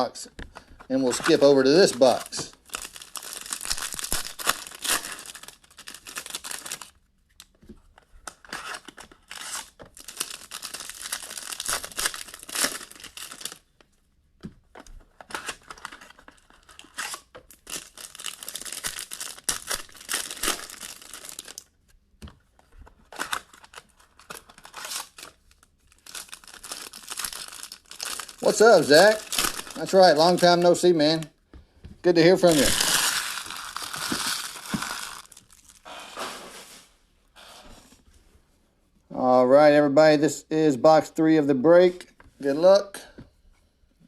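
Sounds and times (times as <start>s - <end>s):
wrappers torn and crinkled: 1.0s - 7.5s, 8.3s - 13.7s, 15.3s - 21.7s, 23.0s - 31.2s, 32.4s - 36.4s.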